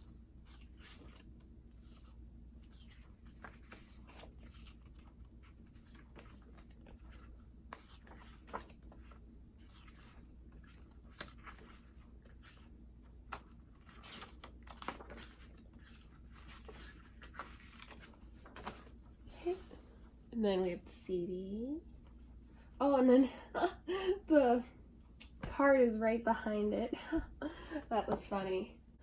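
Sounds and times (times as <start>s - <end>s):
paper pages rustling: 0.4s - 19.7s.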